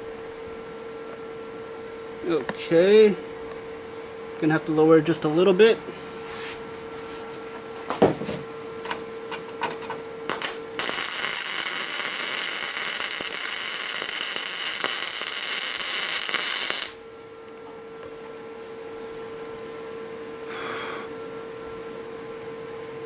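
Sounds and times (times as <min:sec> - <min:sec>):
welder arc hissing: 0:10.3 - 0:17.0.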